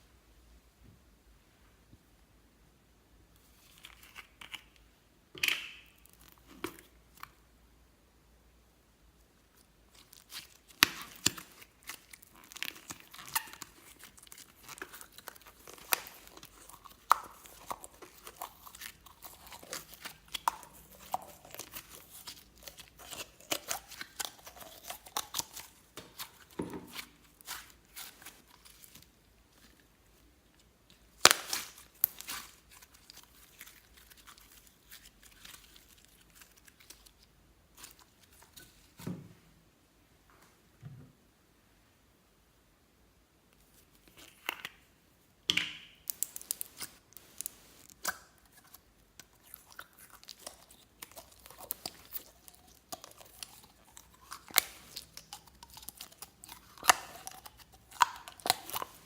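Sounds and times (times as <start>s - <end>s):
slime crackling and popping: 9.9s - 29.7s, 31.0s - 38.5s, 45.8s - 59.0s.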